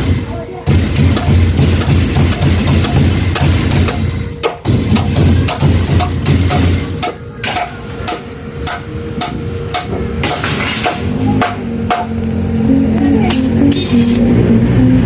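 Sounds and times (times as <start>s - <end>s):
knocking beat: 0.0s - 12.2s
bass line: 11.1s - 15.0s.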